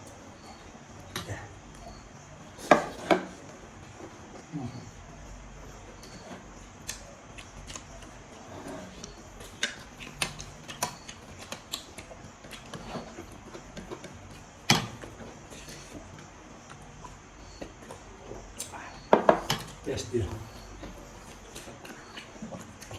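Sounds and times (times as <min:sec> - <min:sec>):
chewing crunches: 0:06.0 - 0:16.0.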